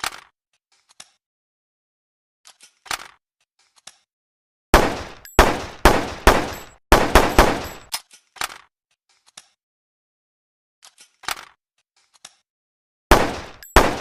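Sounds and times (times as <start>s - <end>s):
handgun gunshots: 4.8s - 7.9s, 13.1s - 14.0s.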